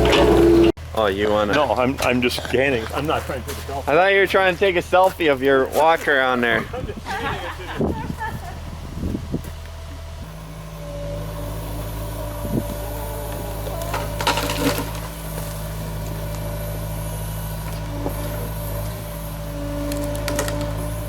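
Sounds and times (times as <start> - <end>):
diesel engine running under load: 0.0 - 21.0
wood cracking and splintering: 19.8 - 20.8.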